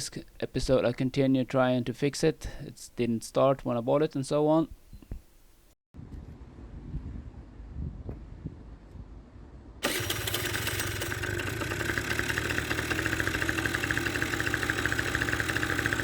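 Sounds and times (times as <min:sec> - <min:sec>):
scooter engine starting and idling: 0:09.8 - 0:16.0.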